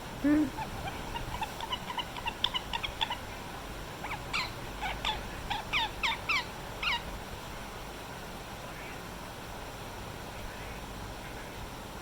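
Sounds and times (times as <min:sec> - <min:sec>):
parakeet chirping: 0:00.4 - 0:03.4, 0:04.0 - 0:07.1.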